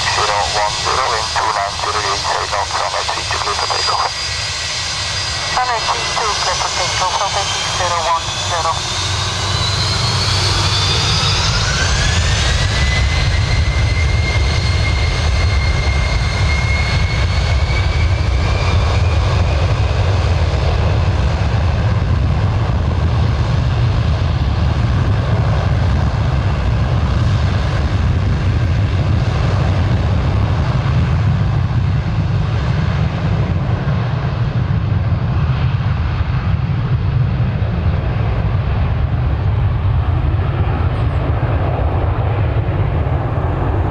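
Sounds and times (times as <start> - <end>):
jet engine rumble: 0.0 - 43.9
jet engine whine: 0.0 - 43.9.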